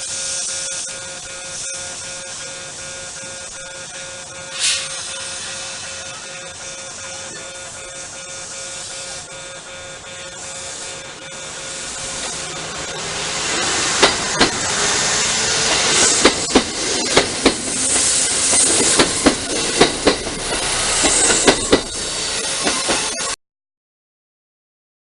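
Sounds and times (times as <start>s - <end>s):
train rolling past: 0.0s - 23.4s
wheels clacking over rail joints: 13.5s - 14.8s, 15.5s - 23.1s.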